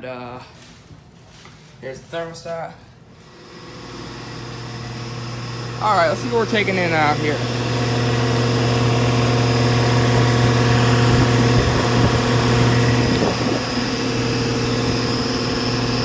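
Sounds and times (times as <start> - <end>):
air conditioner unit humming: 0.0 - 16.0.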